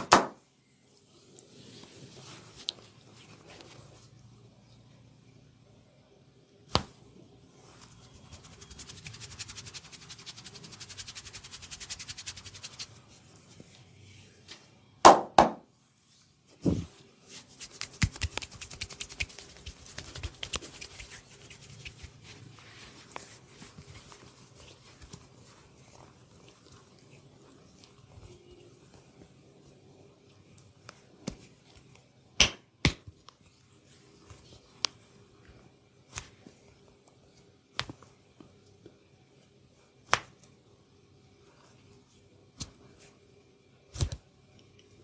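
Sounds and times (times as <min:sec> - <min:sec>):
hands scratching and rubbing: 0:07.6 - 0:13.2, 0:17.3 - 0:28.2.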